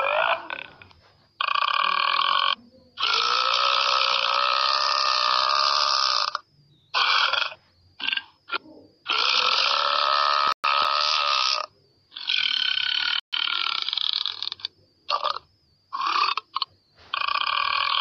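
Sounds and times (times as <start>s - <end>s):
person burping: 15.1s - 15.4s.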